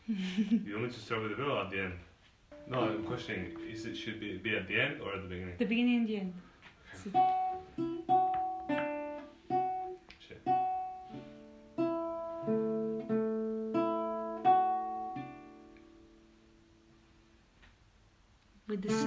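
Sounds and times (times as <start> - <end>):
acoustic guitar picked chords: 2.5 - 5.2, 7.1 - 17.4, 18.8 - 19.0.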